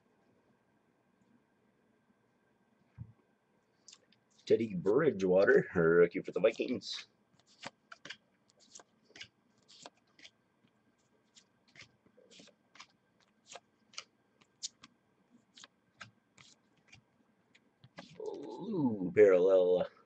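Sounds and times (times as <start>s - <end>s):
trading cards clicking and snapping: 7.4s - 10.3s, 11.7s - 14.9s.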